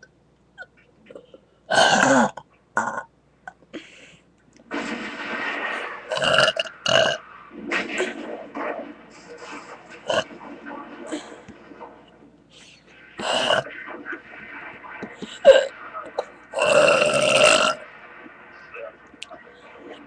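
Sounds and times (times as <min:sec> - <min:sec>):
person burping: 0:00.6 - 0:03.6, 0:06.1 - 0:07.2, 0:13.2 - 0:13.6, 0:15.4 - 0:15.7, 0:16.6 - 0:17.8.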